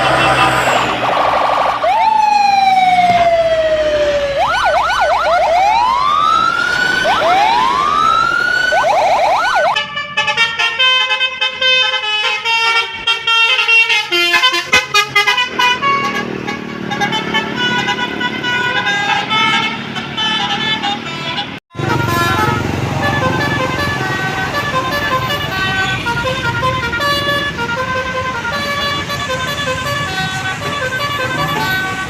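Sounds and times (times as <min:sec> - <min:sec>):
bus horn playing fast tune: 0:00.0 - 0:01.1, 0:09.7 - 0:32.0
bus horn siren effects: 0:00.0 - 0:32.0.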